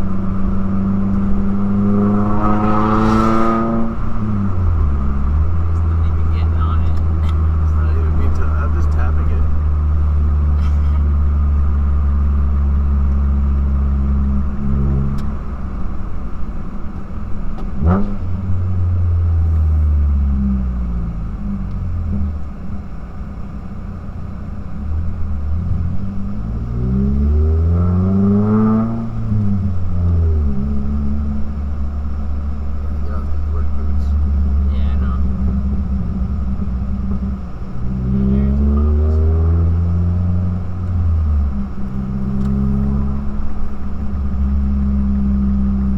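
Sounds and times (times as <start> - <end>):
loud droning car engine revving: 0.0 - 45.9.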